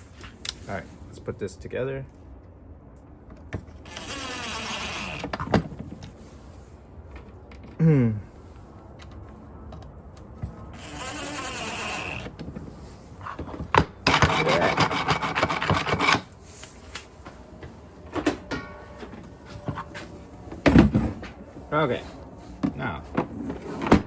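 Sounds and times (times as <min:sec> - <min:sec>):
plastic rubbing and rasping: 0:03.8 - 0:05.8, 0:10.8 - 0:16.3.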